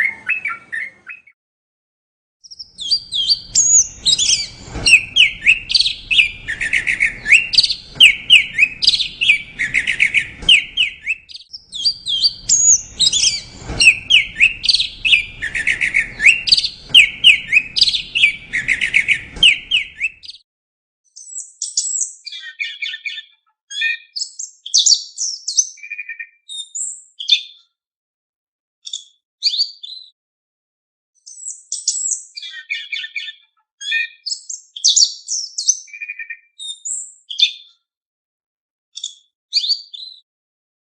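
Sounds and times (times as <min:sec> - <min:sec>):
songbird chirping: 0:02.5 - 0:20.4.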